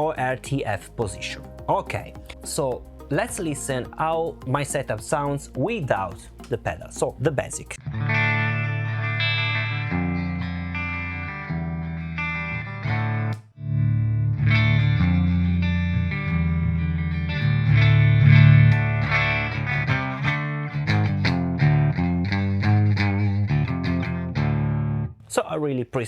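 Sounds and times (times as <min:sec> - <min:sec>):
picked guitar notes: 0:00.0 - 0:04.9, 0:05.6 - 0:25.2
clean electric guitar chords: 0:07.8 - 0:25.2.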